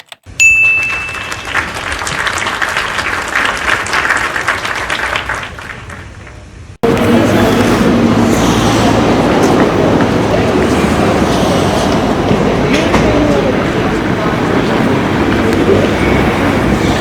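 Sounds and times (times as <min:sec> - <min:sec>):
bright ding: 0:00.4 - 0:01.6
crowd applauding: 0:00.5 - 0:17.0.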